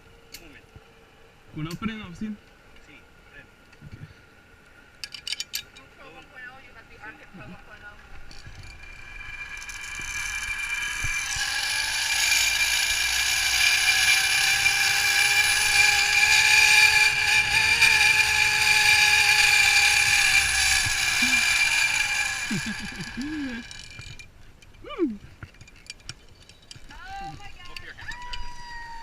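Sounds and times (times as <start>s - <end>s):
zip line pulleys whining: 7.0s - 29.0s.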